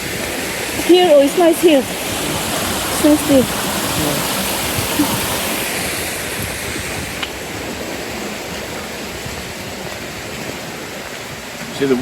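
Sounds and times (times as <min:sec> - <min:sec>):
stream water rushing: 0:00.0 - 0:12.0.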